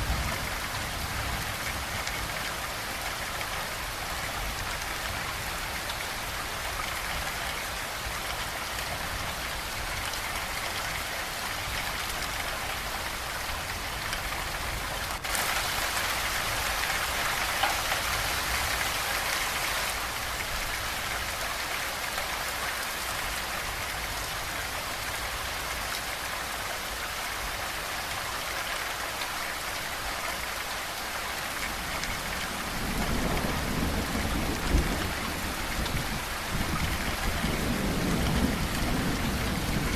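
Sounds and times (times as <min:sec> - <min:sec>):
low rumble of thunder: 0:00.0 - 0:07.4, 0:31.8 - 0:39.9
steady rain falling: 0:00.0 - 0:39.9.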